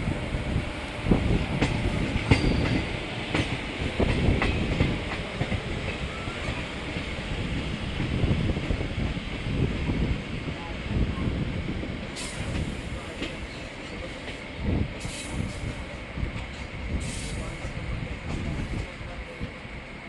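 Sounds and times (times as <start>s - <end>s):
train rumbling on track: 0.0s - 20.0s
wheels clacking over rail joints: 1.5s - 7.2s.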